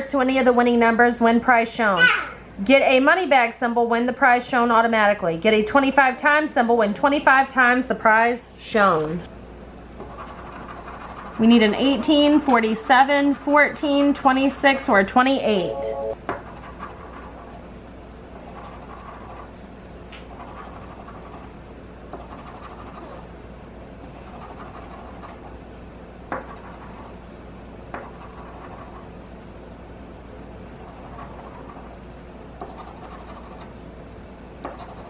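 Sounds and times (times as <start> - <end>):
scratch ticket scraping: 10.1 - 14.7.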